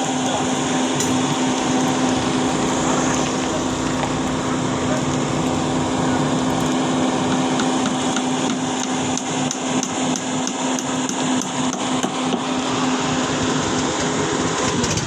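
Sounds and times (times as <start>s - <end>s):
engine humming: 0.0s - 10.2s.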